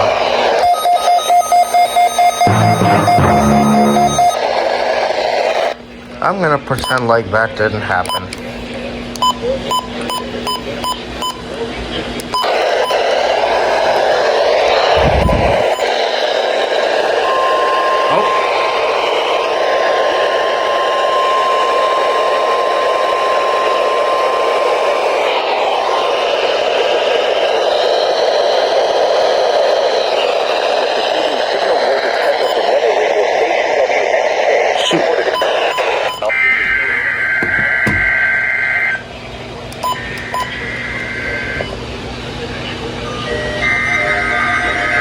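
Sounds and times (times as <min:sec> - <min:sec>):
screeching two-tone data bursts: 0:00.0 - 0:04.4
radio alarm tone: 0:00.0 - 0:05.8, 0:12.4 - 0:39.0
radio static hiss: 0:02.3 - 0:08.7, 0:11.4 - 0:39.0.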